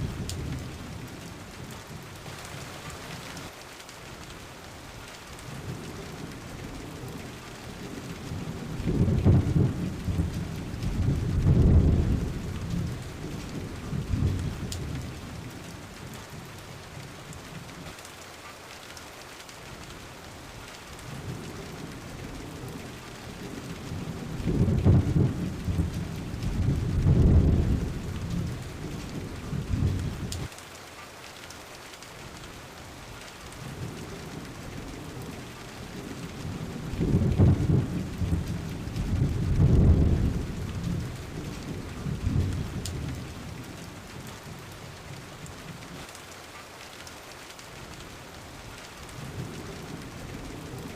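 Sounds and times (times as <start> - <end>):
steady rain: 0.0 - 50.9
thunder rolling: 7.8 - 15.2, 23.5 - 30.5, 36.6 - 43.4.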